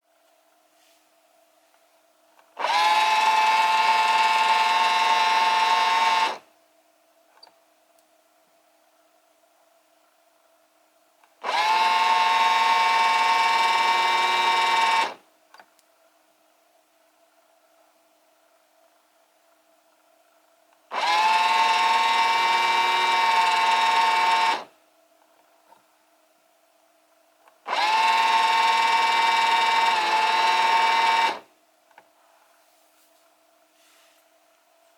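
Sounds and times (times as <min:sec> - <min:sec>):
cordless drill motor whining: 0:02.6 - 0:06.4, 0:11.4 - 0:15.2, 0:20.9 - 0:24.7, 0:27.6 - 0:31.5.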